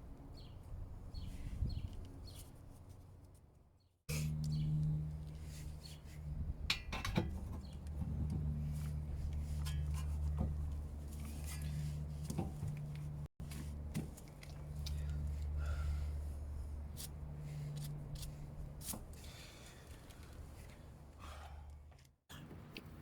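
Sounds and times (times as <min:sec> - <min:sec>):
steady low hum: 0:04.1 - 0:22.0.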